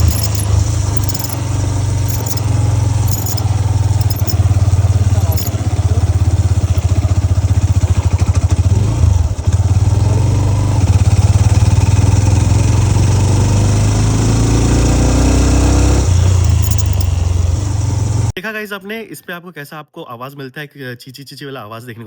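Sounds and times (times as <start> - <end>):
motorcycle engine running: 0.0 - 14.2, 15.5 - 18.3.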